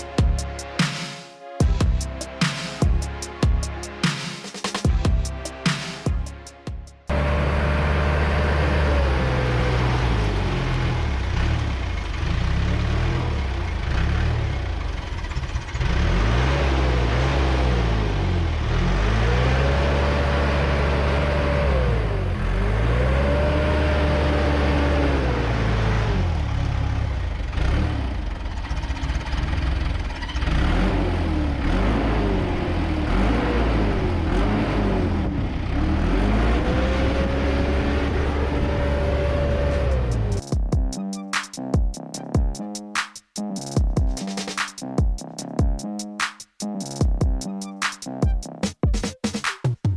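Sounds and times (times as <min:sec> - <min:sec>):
bulldozer diesel engine revving: 0:07.1 - 0:26.8.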